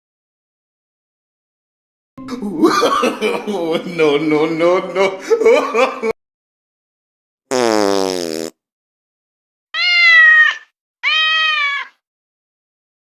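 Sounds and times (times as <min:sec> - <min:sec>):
cat crying falling in pitch: 0:09.8 - 0:12.0
cat meowing: 0:09.8 - 0:12.0.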